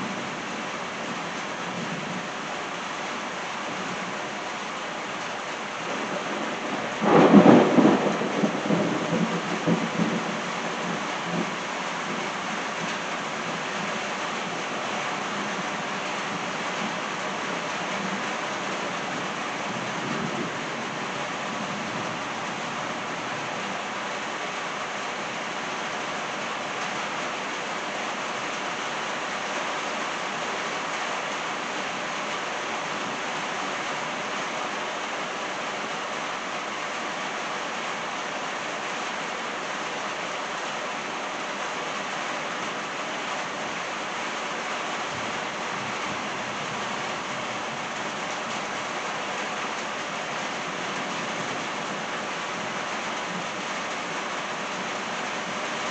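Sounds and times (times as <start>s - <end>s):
steady rain falling: 0.0s - 55.9s
rolling thunder: 5.9s - 11.6s.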